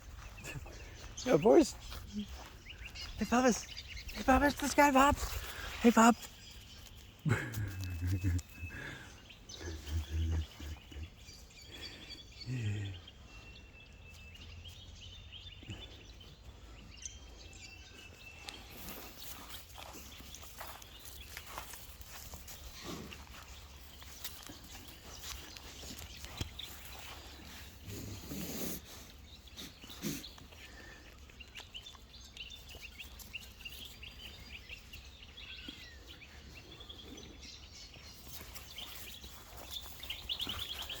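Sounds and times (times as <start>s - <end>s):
small birds chirping: 0.0s - 41.0s
sheep making low sounds: 7.2s - 13.2s, 27.0s - 30.6s.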